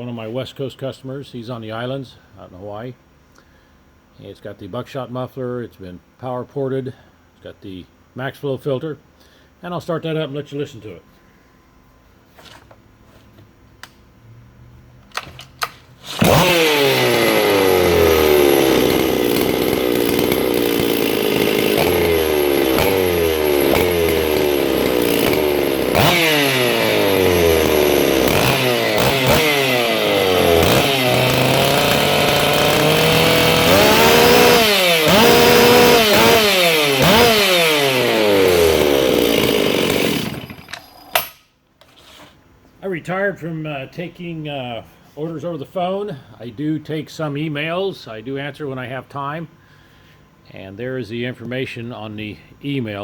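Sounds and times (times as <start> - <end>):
chainsaw revving: 16.0 - 41.4.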